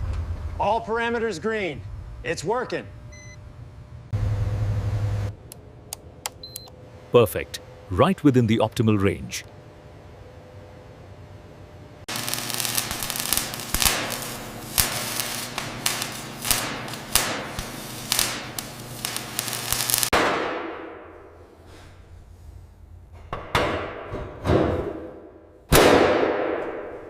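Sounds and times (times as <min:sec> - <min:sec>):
steady humming drone: 0:01.6 - 0:20.2
sharp bangs and cracks: 0:12.1 - 0:21.6, 0:25.7 - 0:27.0.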